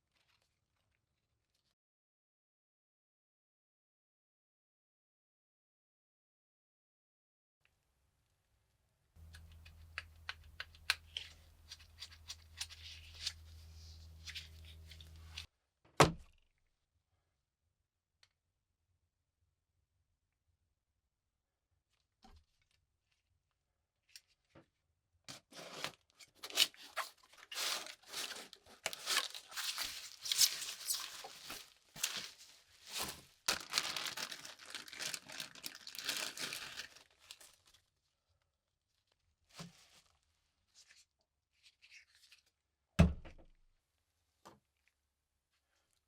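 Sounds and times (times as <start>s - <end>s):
crinkly material crackling: 9.2s - 15.5s, 25.6s - 42.5s
sharp thump: 43.0s - 43.4s.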